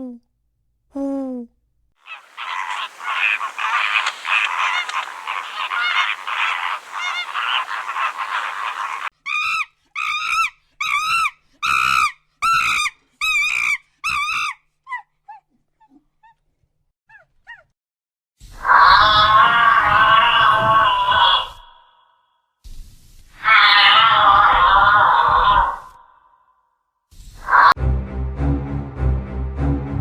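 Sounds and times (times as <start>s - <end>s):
flock of geese calling: 2.1s - 9.1s
goose honking: 2.1s - 9.1s
short low animal call: 2.1s - 9.1s.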